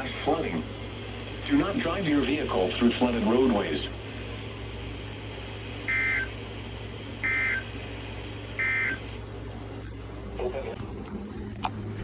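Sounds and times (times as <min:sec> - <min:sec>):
low hum and hiss: 0:00.0 - 0:12.0
electronic data tone bursts: 0:05.9 - 0:06.3, 0:07.2 - 0:07.7, 0:08.6 - 0:09.0.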